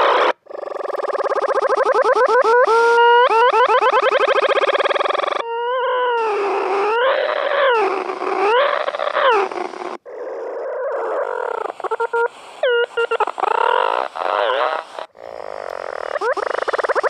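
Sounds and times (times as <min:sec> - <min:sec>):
electronic tone wavering in pitch: 0:00.0 - 0:05.8.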